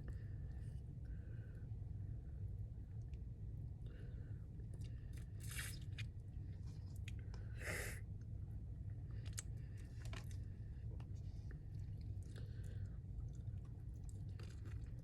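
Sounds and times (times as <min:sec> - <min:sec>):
wet chewing: 0:12.2 - 0:15.0
crispy chicken crunching: 0:14.4 - 0:15.0.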